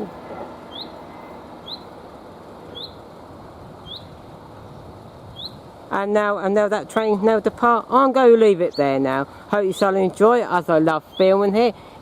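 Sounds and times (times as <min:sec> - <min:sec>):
bird chirping: 0:00.0 - 0:02.0, 0:02.6 - 0:03.1, 0:03.8 - 0:05.6, 0:08.6 - 0:09.0, 0:11.0 - 0:11.4
background hiss and rumble: 0:00.0 - 0:12.0.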